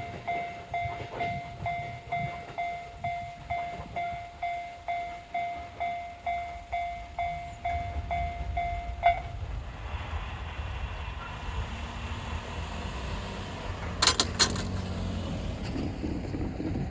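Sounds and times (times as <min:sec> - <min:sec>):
level crossing alarm dinging: 0:00.0 - 0:09.3
electric train rumbling: 0:00.0 - 0:16.9
train wheel clacks: 0:00.0 - 0:16.9.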